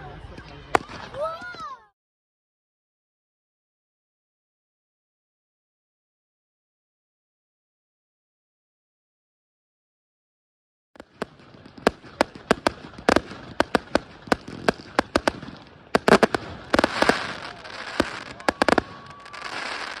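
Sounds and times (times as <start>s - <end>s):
fireworks crackling: 0.8s - 1.3s, 11.0s - 20.0s
fireworks bangs and cracks: 0.8s - 1.6s, 11.0s - 20.0s.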